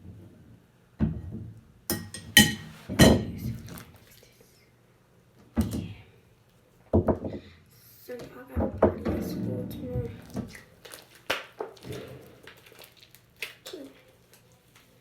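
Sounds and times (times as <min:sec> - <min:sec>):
utensil scraping and knocking bowl: 0:01.9 - 0:03.5.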